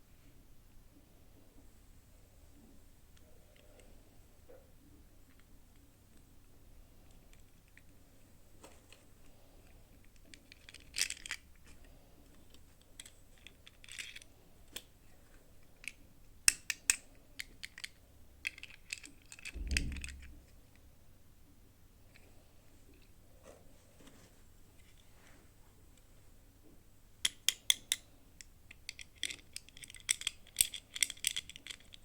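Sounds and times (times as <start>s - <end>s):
plastic pieces clicking and clattering: 10.1s - 11.8s, 13.0s - 14.2s, 15.8s - 20.2s, 28.7s - 32.0s
rustling thump: 19.5s - 20.6s.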